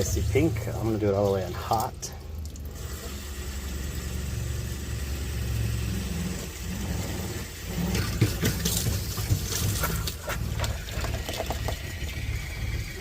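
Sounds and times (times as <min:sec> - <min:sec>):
water splashes and clicks: 0:00.0 - 0:03.2, 0:07.8 - 0:12.2
water pump humming: 0:00.0 - 0:13.0.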